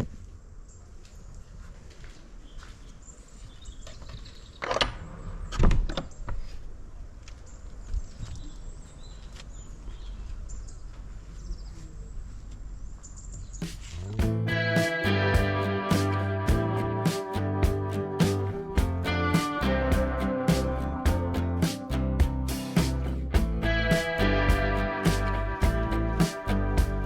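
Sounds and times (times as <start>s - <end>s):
birds chirping: 7.4s - 27.0s
music: 14.2s - 27.0s.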